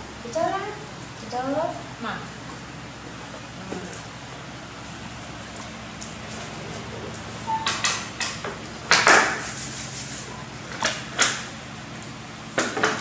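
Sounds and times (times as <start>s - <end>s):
sharp knocks and clatters: 7.7s - 9.6s.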